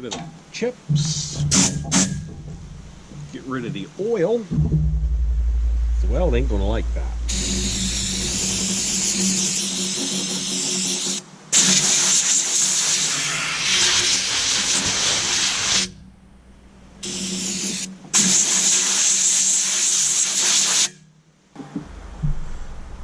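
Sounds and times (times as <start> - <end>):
steady low hum: 0.0 - 11.5, 14.6 - 18.2
compressed air blow gun blasting: 7.3 - 16.0, 17.0 - 20.9.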